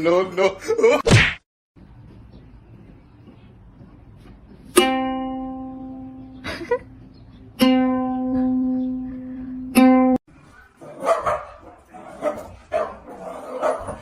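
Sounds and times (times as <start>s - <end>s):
plucked string note: 4.7s - 6.4s, 7.6s - 10.2s.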